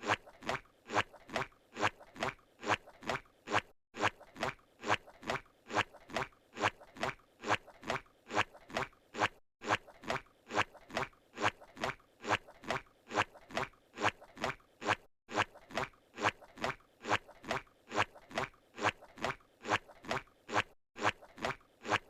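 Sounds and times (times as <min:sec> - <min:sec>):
squishy cartoon footsteps: 0:00.0 - 0:22.0.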